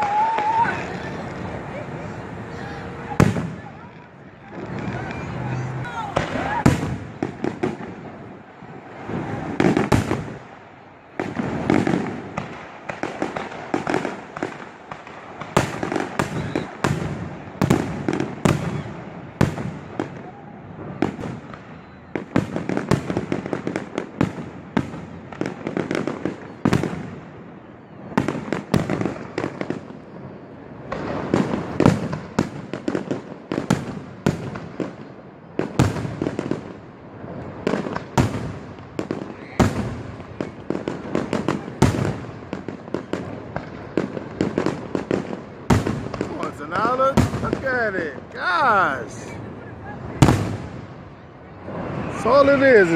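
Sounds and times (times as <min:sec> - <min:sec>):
fireworks bursting with sharp bangs: 0:00.0 - 0:52.9
continuous rumble: 0:00.4 - 0:27.5.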